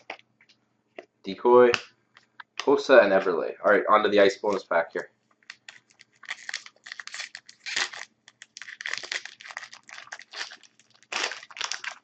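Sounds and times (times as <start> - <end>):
foil wrapper crinkling and ripping: 5.5 - 12.0.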